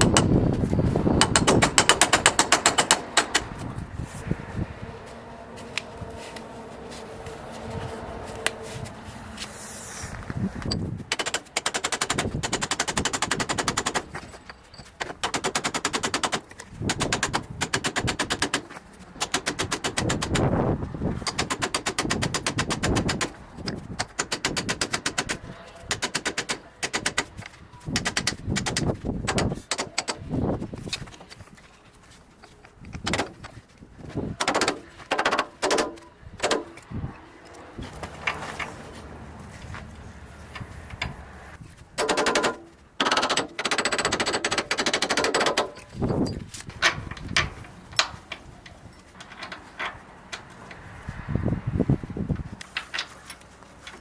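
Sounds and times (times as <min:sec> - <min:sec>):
ratchet wrench clicking: 0:19.2 - 0:20.6, 0:21.2 - 0:27.3, 0:27.9 - 0:30.2, 0:42.0 - 0:48.1.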